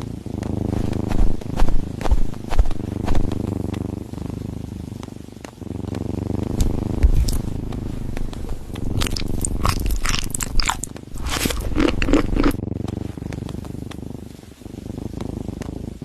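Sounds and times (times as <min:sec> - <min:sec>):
low steady rumble: 0:00.0 - 0:16.0
cat crunching food: 0:06.0 - 0:14.1.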